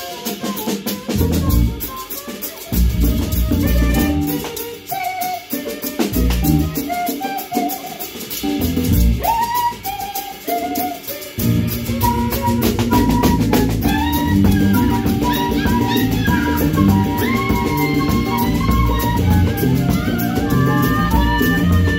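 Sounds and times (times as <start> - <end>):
drum kit beat: 0.0 - 21.9
bass line: 1.2 - 1.8, 2.8 - 4.5, 8.5 - 9.3, 11.4 - 21.9
fast cymbal ticks: 7.6 - 14.0.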